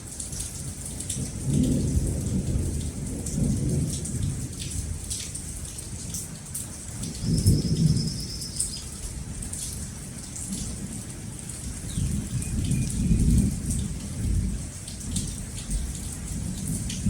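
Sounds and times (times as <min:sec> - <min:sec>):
steady rain: 0:00.0 - 0:17.0
thunder rumbling: 0:11.6 - 0:17.0.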